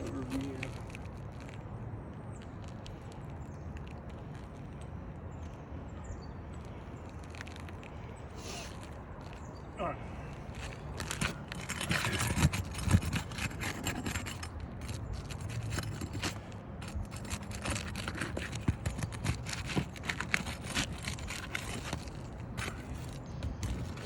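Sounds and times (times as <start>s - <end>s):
metal tool scraping roof shingles: 10.4s - 24.0s.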